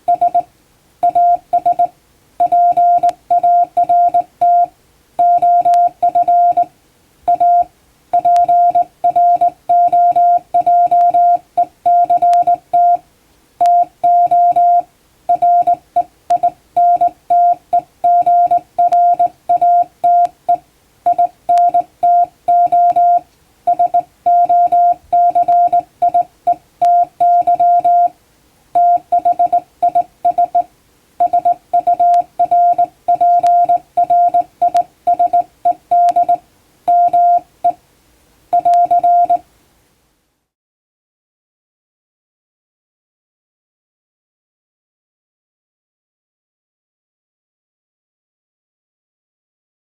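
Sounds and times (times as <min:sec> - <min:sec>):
morse code tone: 0:00.0 - 0:06.7, 0:07.3 - 0:13.0, 0:13.6 - 0:28.1, 0:28.8 - 0:37.8, 0:38.6 - 0:39.4.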